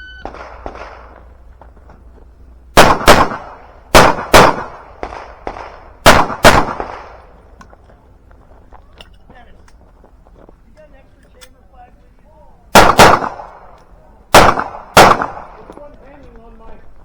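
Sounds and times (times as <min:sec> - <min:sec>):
pistol shots in pairs: 0:00.1 - 0:01.3, 0:02.7 - 0:07.4, 0:12.7 - 0:15.8.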